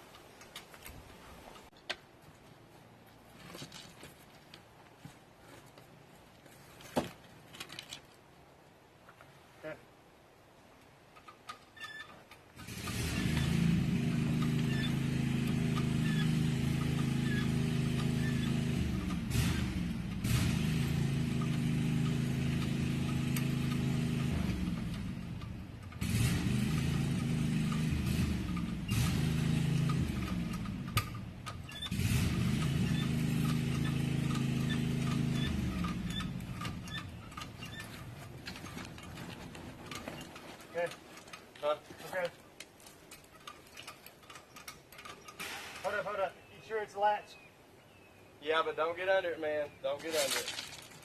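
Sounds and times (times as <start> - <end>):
small clinks and knocks: 6.8 - 8.2, 33.4 - 45.4
heavy equipment engine running: 12.6 - 39.1.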